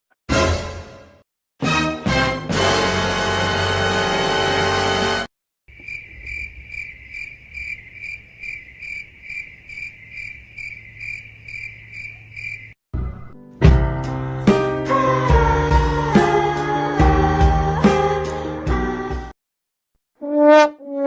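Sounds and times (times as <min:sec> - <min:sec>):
cricket chirping: 0:05.7 - 0:12.8.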